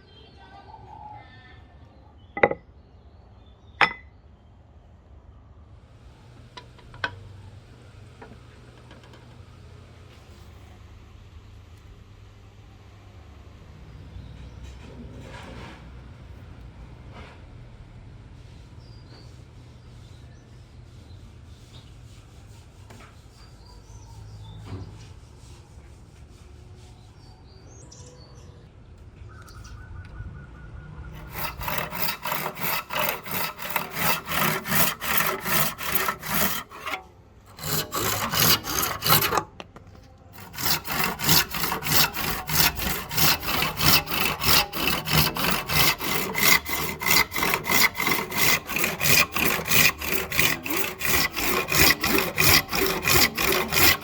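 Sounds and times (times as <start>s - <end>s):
hand saw cutting wood: 31.2s - 39.6s, 40.4s - 54.0s.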